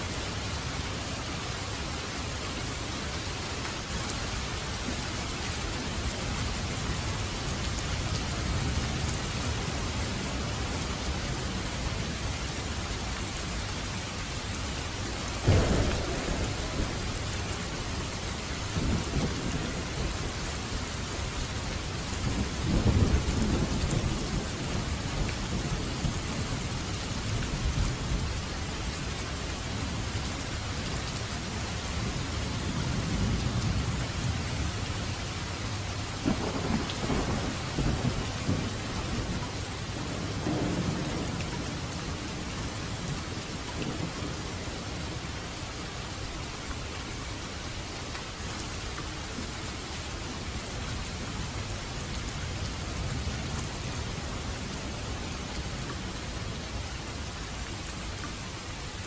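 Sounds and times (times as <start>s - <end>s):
heavy rain hissing: 0.0s - 59.0s
thunder rumbling: 15.4s - 28.4s, 36.2s - 45.2s
thunder crack: 15.5s - 17.8s.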